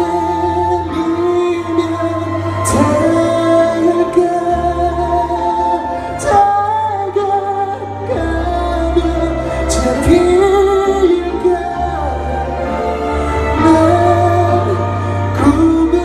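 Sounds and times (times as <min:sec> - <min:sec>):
people singing in harmony: 0:00.0 - 0:16.0
steady bass line: 0:00.0 - 0:16.0.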